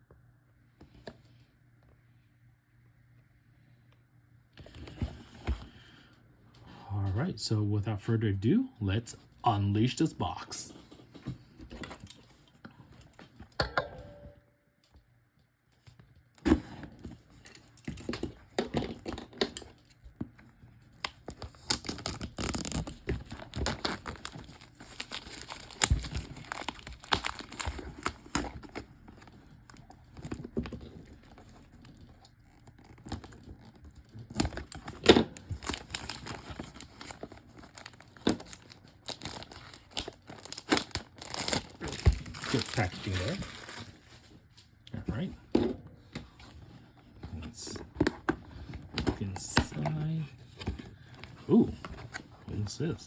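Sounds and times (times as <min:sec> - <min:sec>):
plastic wrap crinkling: 0:21.0 - 0:44.5.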